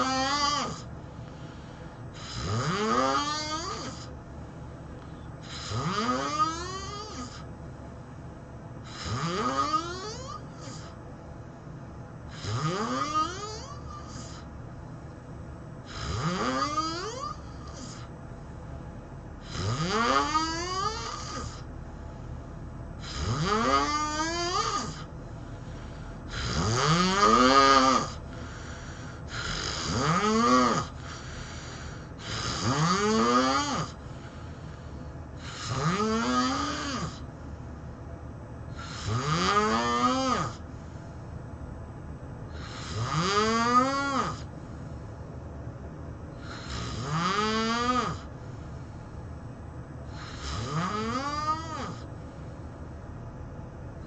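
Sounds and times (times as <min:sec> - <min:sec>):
person snoring loudly: 0:00.0 - 0:00.9, 0:02.2 - 0:04.1, 0:05.4 - 0:07.4, 0:08.8 - 0:10.9, 0:12.3 - 0:14.5, 0:15.8 - 0:18.1, 0:19.4 - 0:21.7, 0:23.0 - 0:25.1, 0:26.3 - 0:34.1, 0:35.4 - 0:37.3, 0:38.7 - 0:40.6, 0:42.5 - 0:44.5, 0:46.4 - 0:48.3, 0:50.1 - 0:52.1.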